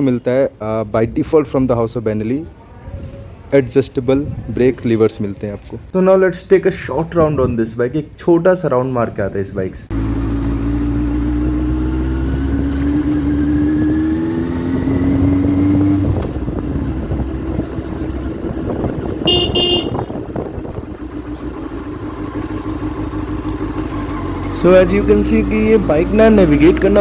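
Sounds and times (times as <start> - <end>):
motorcycle engine accelerating: 9.9 - 27.0
short vehicle horn toot: 19.2 - 20.4.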